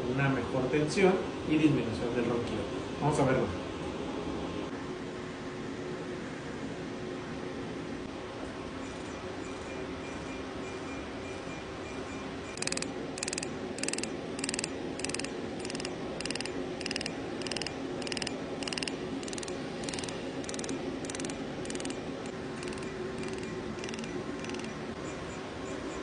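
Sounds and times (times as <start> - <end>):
steady low hum: 0.0 - 26.0
dental laser pulsing: 12.5 - 25.0.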